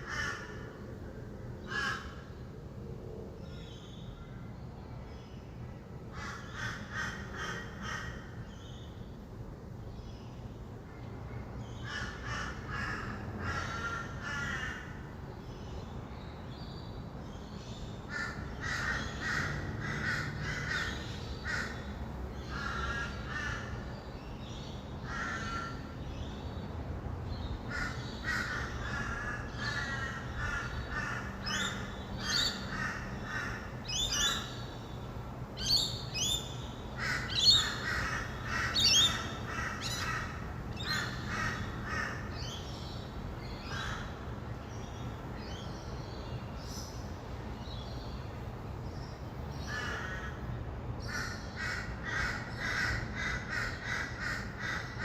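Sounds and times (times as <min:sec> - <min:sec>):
distant traffic hum: 0:00.0 - 0:55.0
parrots calling: 0:35.6 - 0:42.2.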